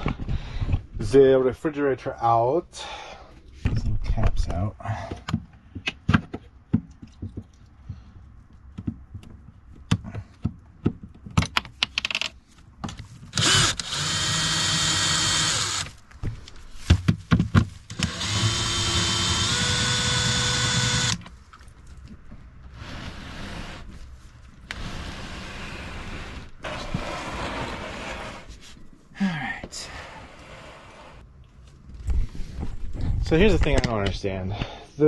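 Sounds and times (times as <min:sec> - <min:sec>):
cordless drill running: 0:13.3 - 0:15.9, 0:17.9 - 0:21.2.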